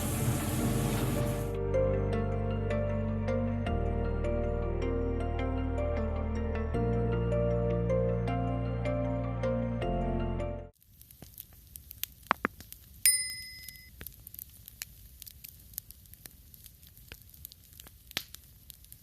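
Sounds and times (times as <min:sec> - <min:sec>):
metallic clink: 0:13.1 - 0:13.9.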